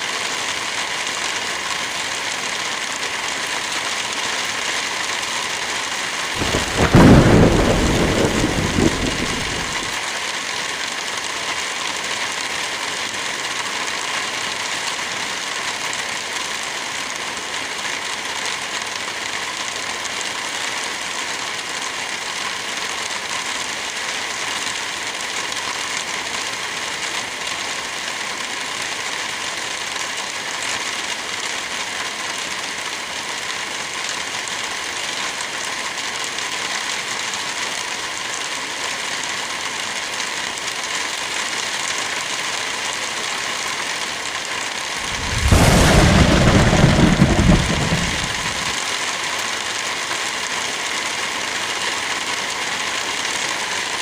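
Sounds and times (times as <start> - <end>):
light rain falling: 0.0 - 54.0
wind through forest trees: 3.4 - 11.1, 41.1 - 49.8.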